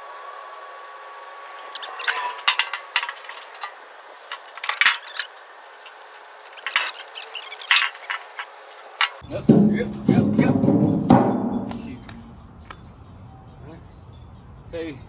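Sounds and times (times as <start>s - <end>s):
metal can clinking and knocking: 1.6s - 5.3s, 6.6s - 11.8s.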